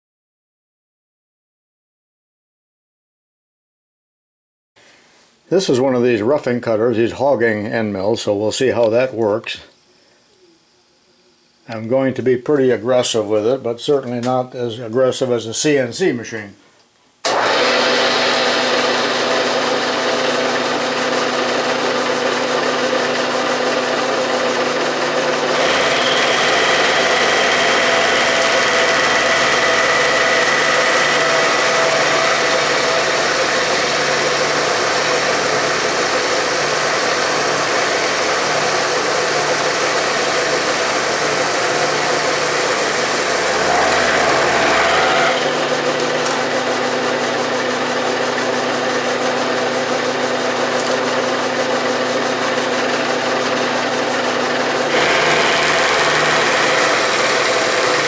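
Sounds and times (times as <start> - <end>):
milling machine cutting steel: 17.3 - 58.0.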